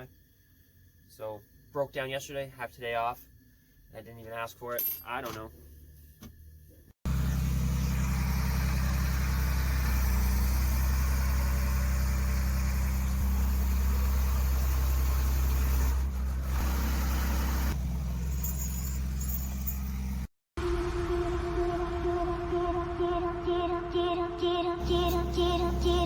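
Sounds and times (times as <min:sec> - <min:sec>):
vehicle engine running: 0:05.7 - 0:24.2, 0:24.8 - 0:26.0.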